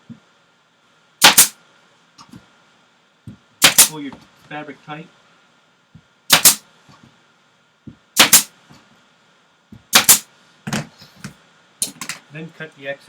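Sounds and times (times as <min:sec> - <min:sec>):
pneumatic staple gun firing: 0:01.2 - 0:01.6, 0:03.6 - 0:04.0, 0:06.3 - 0:06.6, 0:08.2 - 0:08.5, 0:09.9 - 0:10.2.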